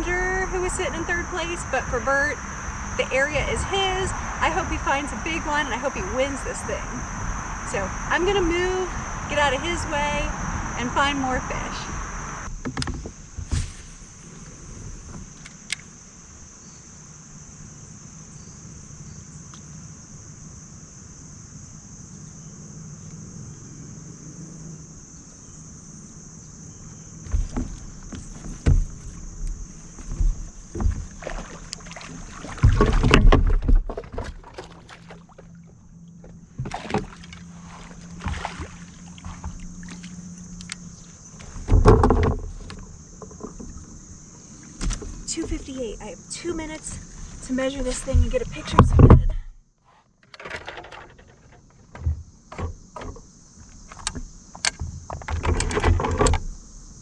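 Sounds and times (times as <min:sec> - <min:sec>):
kayak low hum: 0:00.0 - 0:21.3, 0:23.0 - 0:57.0
knocks and thumps against hull: 0:07.8 - 0:15.5, 0:27.2 - 0:49.6, 0:50.2 - 0:56.6.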